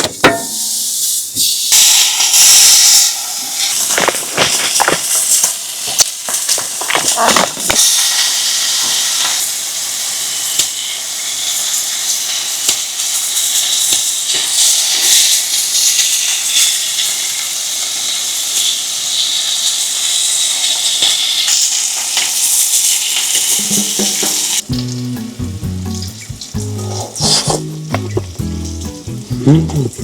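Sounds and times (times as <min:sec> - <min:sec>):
fat popping and crackling: 0:00.0 - 0:09.4, 0:21.5 - 0:30.0
meat sizzling on a grill: 0:00.0 - 0:30.0.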